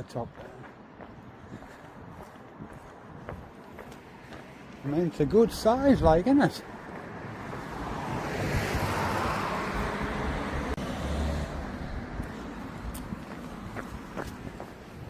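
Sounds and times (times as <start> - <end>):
car passing by: 6.7 - 15.0.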